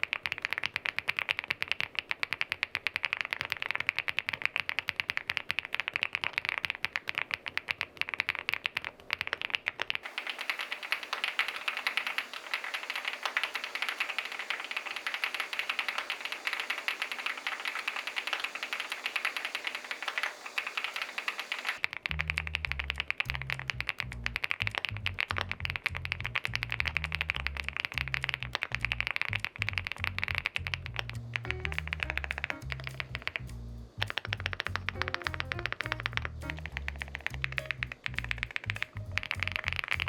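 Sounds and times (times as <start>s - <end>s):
fast mechanical keyboard typing: 0.0s - 40.0s.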